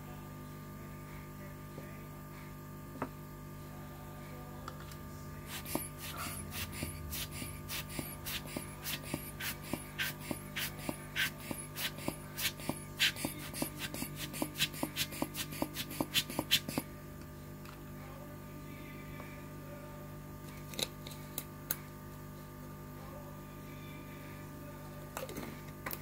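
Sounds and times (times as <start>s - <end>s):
steady low hum: 3.1s - 21.4s
rapid scratching strokes: 5.5s - 16.9s.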